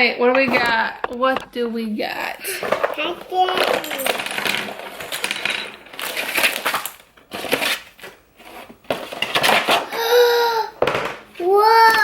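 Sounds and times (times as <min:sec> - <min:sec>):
packaging crinkling and crackling: 0:02.4 - 0:10.3.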